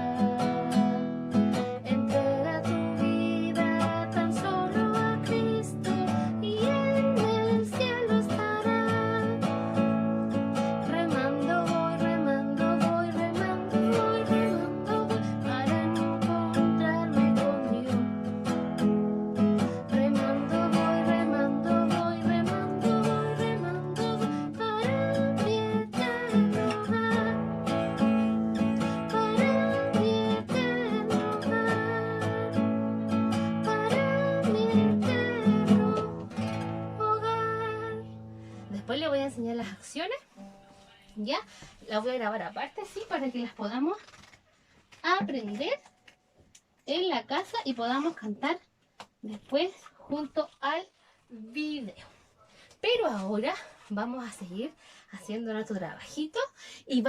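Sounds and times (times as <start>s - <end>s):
acoustic guitar strumming: 0.0s - 39.2s, 40.3s - 41.2s.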